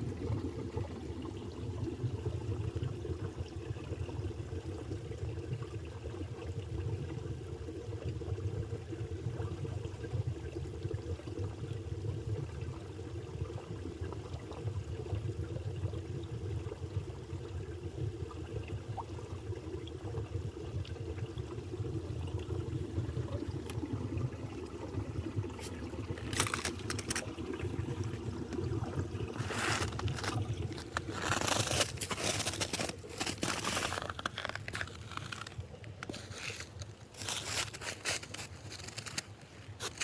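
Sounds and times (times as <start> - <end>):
stream water running: 0.0 - 40.0
crunching and scraping: 25.6 - 27.3, 29.4 - 40.0.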